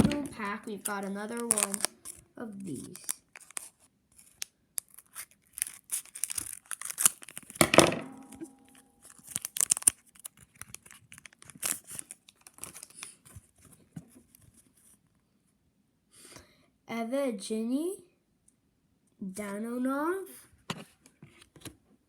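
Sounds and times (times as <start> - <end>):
wrapper tearing and crinkling: 0.0 - 7.6, 8.3 - 13.2.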